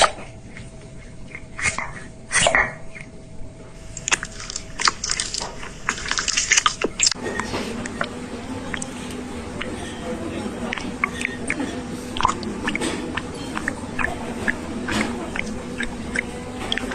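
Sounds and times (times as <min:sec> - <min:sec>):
cat crunching food: 0:03.8 - 0:09.8, 0:10.6 - 0:16.9.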